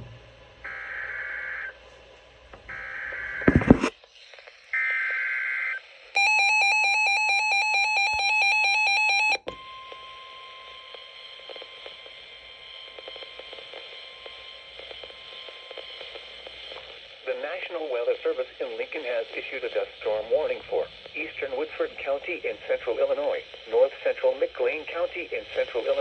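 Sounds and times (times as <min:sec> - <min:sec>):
crackling radio static: 0:00.7 - 0:01.8, 0:02.6 - 0:06.1, 0:10.8 - 0:26.0
data noise burst: 0:02.8 - 0:03.9.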